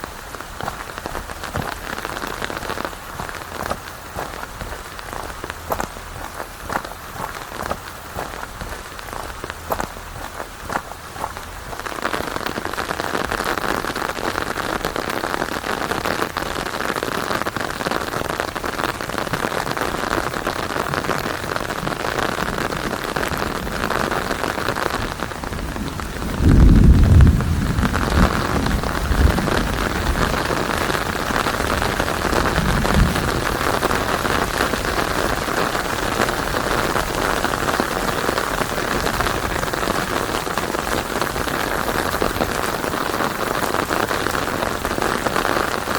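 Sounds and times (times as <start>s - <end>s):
steady rain: 0.0s - 45.9s
thunderclap rumbling: 21.7s - 43.4s.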